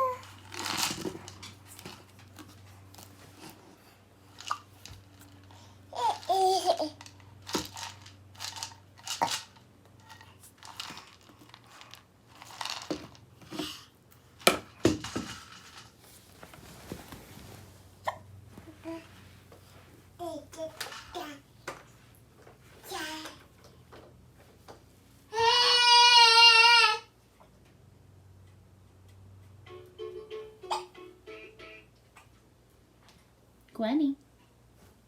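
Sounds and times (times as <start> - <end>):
baby babbling: 0.0 - 0.4
crinkling and rustling: 0.0 - 25.2.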